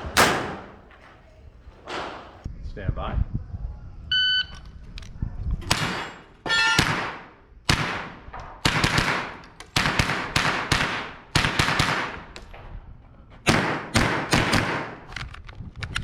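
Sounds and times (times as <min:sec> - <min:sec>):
gunshots with ringing tails: 0:00.0 - 0:01.3.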